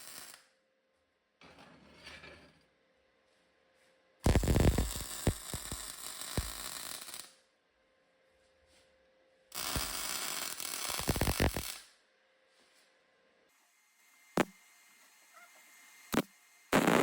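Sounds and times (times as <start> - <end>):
electric welding crackling: 0.0 - 0.4, 4.2 - 7.3, 9.5 - 11.8, 14.4 - 14.6, 16.1 - 17.0.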